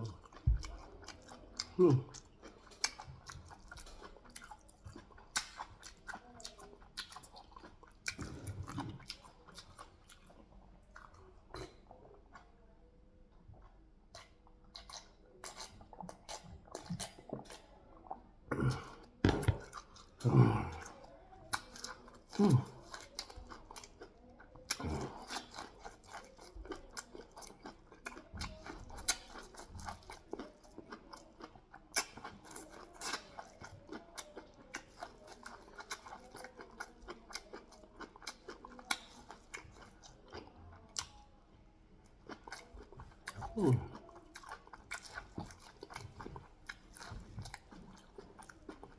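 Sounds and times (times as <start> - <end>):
wet crunchy chewing: 42.2 - 48.9.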